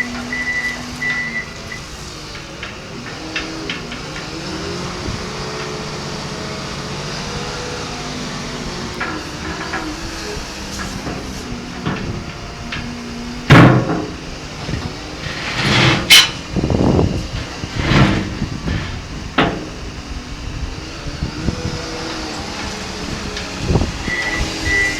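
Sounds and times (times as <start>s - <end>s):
knocks and bang: 0.0s - 20.0s
wheel loader engine running: 0.0s - 24.9s.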